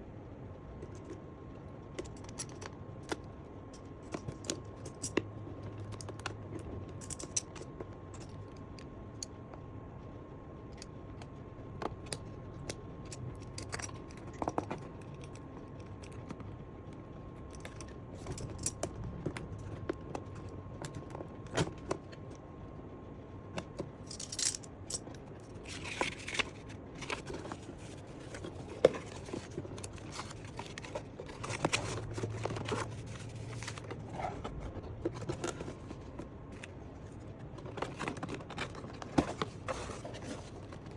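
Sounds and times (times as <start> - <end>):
packaging rustling and tearing: 25.6 - 40.9
packaging clicks and taps: 28.2 - 36.7.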